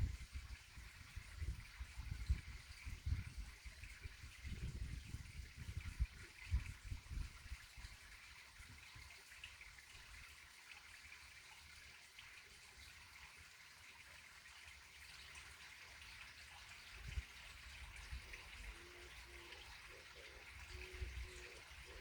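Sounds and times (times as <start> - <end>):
wind rumble on microphone: 0.0 - 8.8, 16.8 - 22.0
stream water trickling: 0.0 - 22.0.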